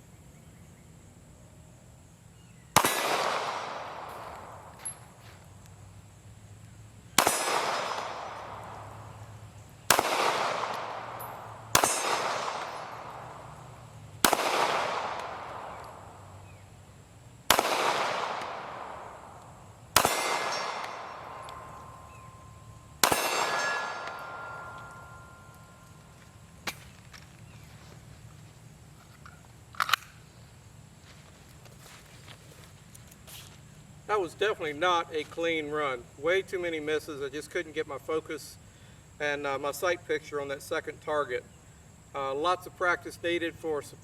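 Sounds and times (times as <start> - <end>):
pistol shots with echo: 2.8 - 4.8, 7.2 - 9.3, 9.9 - 16.2, 17.5 - 26.0
steel target plate ringing: 10.7 - 13.5, 20.0 - 26.1.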